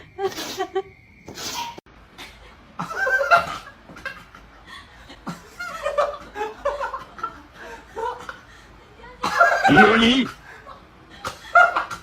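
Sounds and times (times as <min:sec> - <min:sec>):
person laughing: 0:09.1 - 0:12.0.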